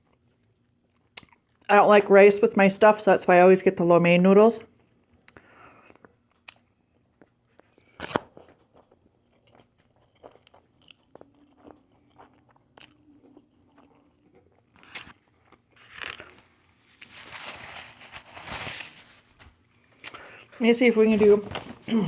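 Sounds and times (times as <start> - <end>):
chewing with crunches: 0.0 - 1.7, 4.6 - 17.2.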